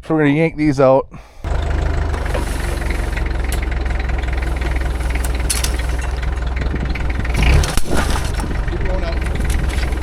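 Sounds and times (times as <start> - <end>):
heavy engine idling: 1.4 - 10.0.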